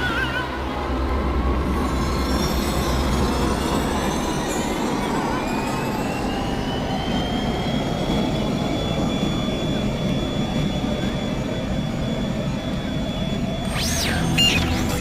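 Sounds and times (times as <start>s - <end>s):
thin rising whine: 11.6s - 15.0s.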